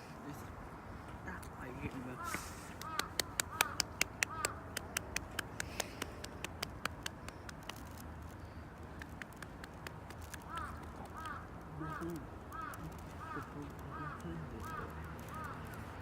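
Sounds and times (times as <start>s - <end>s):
crow cawing: 2.0s - 4.9s, 10.2s - 16.0s
rapid sharp clicks: 2.8s - 16.0s.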